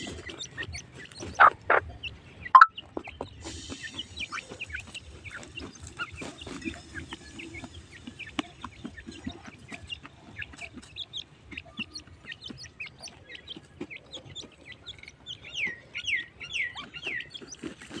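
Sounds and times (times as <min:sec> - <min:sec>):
partridges chirping and clucking: 0:00.0 - 0:18.0
squeaky sliding bird calls: 0:02.5 - 0:02.7.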